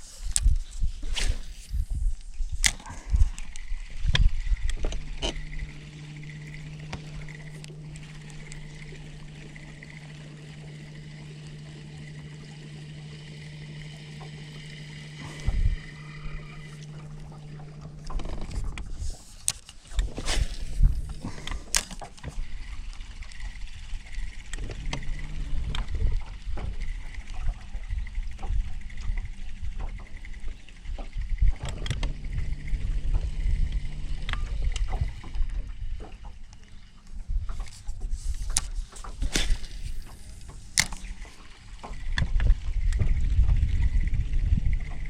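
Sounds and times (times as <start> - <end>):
rumble of wind and water: 0.0 - 45.0
gear knocking against hull: 19.8 - 36.6, 37.2 - 45.0.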